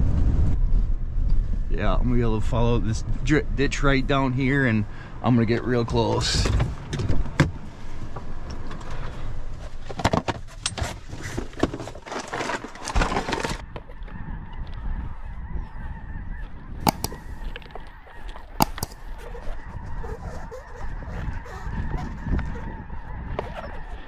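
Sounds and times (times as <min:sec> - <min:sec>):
low rumble: 0:00.0 - 0:09.7
geese honking: 0:13.6 - 0:24.0
sharp clicks: 0:16.8 - 0:17.8, 0:18.6 - 0:19.1.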